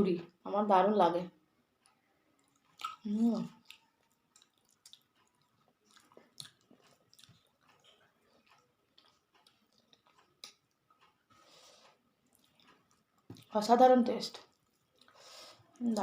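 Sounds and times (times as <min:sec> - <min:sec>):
close-up chewing: 0:01.8 - 0:13.6, 0:14.4 - 0:16.0
wet mouth clicks and smacks: 0:02.4 - 0:11.2.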